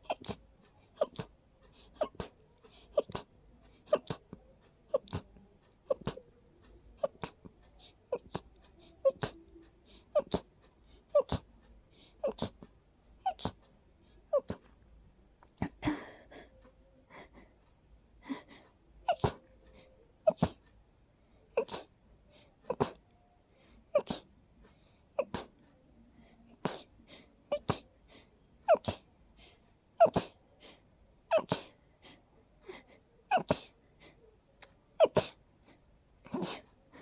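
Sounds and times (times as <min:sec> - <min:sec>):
person sneezing: 0:30.0 - 0:30.4, 0:31.3 - 0:31.8, 0:33.3 - 0:33.7, 0:35.0 - 0:35.4.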